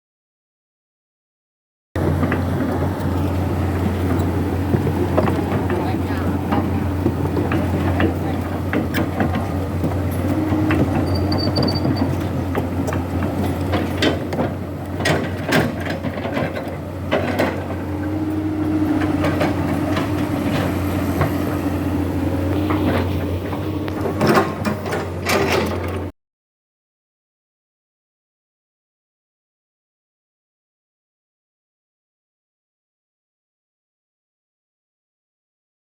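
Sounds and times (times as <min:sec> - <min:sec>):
excavator diesel engine drone: 0:02.0 - 0:26.1
metallic clanks and knocks: 0:02.0 - 0:26.1.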